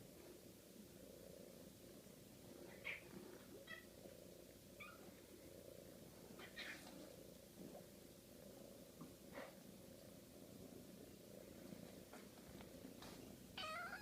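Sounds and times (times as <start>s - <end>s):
cat purring: 0.2s - 14.0s
cat mewing: 13.6s - 14.0s.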